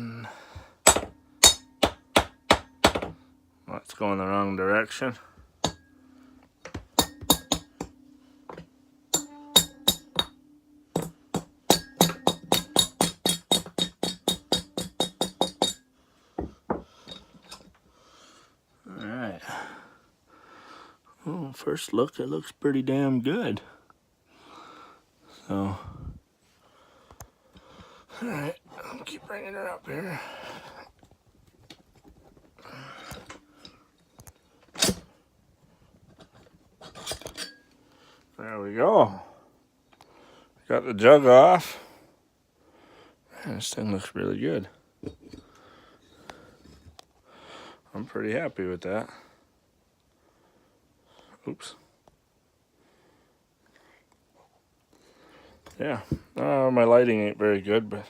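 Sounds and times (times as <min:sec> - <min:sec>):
sharp metal knock: 0:00.8 - 0:03.2, 0:06.7 - 0:08.0, 0:09.1 - 0:15.8
metallic tapping on engine cylinder: 0:06.6 - 0:15.8.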